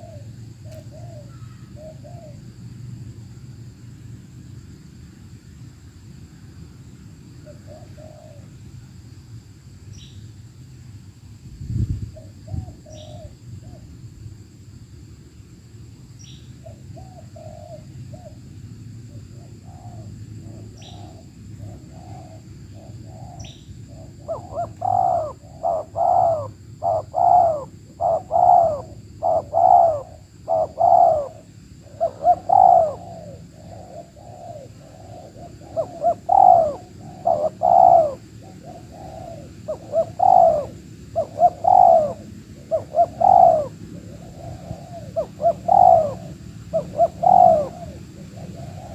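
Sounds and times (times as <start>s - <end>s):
dove cooing: 0.0s - 2.6s, 7.4s - 8.6s, 12.2s - 13.9s, 16.6s - 18.4s, 19.1s - 48.9s.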